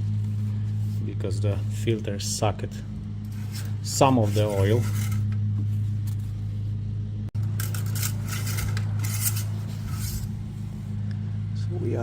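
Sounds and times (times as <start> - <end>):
low hum: 0.0 - 12.0
scraping and clinking handling: 3.2 - 6.3, 7.4 - 10.4.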